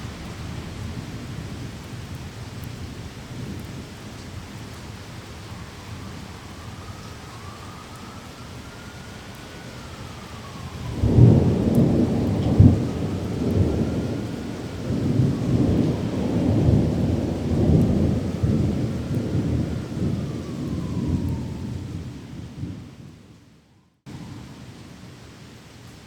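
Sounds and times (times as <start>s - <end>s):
heavy rain: 0.0s - 23.5s, 24.1s - 26.0s
thunder rolling: 10.0s - 23.4s.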